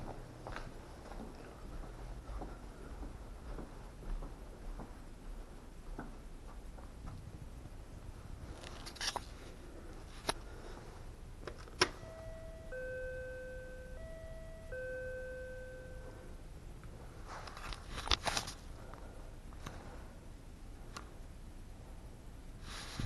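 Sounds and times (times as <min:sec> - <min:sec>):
electronic ding-dong chime: 0:12.0 - 0:16.4
handling rustling and clicking: 0:17.3 - 0:18.7.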